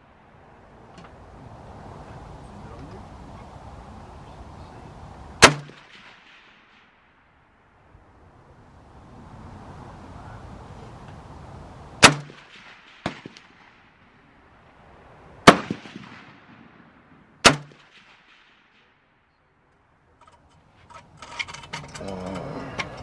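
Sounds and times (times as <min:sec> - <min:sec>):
rifle shots with echo: 0:05.4 - 0:07.3, 0:12.0 - 0:14.4, 0:15.4 - 0:19.2.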